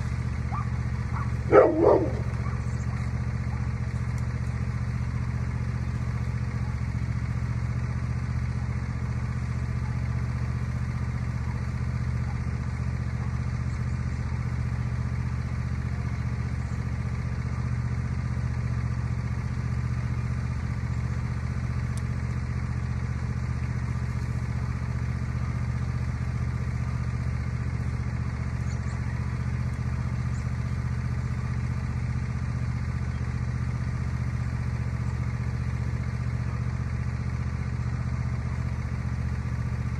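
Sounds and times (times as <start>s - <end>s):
riding lawnmower engine running: 0.0s - 39.9s.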